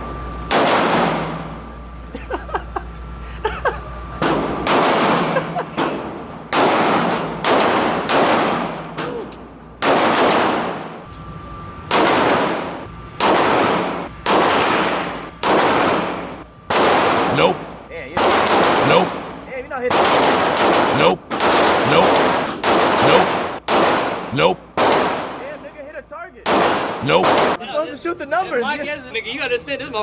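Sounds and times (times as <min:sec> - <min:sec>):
gunshots with echoing decay: 0:06.5 - 0:08.8, 0:09.8 - 0:10.8, 0:19.9 - 0:25.4.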